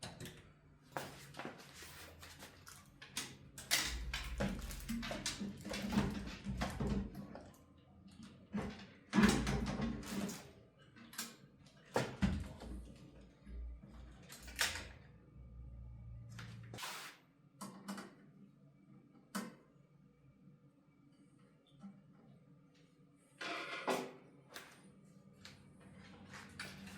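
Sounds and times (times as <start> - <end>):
low hum: 15.3 - 16.8.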